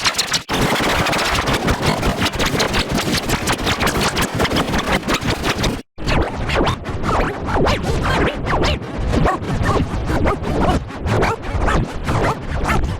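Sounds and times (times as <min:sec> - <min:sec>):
distorted cartoon audio: 0:00.0 - 0:06.2.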